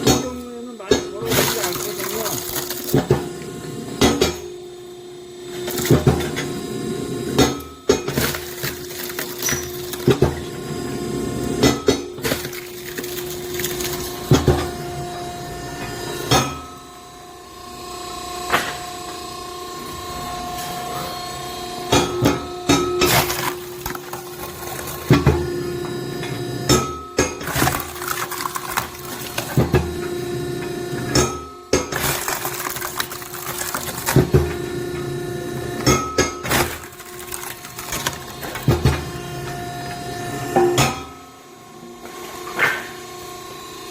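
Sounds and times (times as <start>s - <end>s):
hydraulic pump hum: 0.0s - 40.7s
wood cracking and knocking: 23.0s - 25.3s, 27.4s - 29.7s, 31.8s - 34.5s, 36.4s - 39.0s.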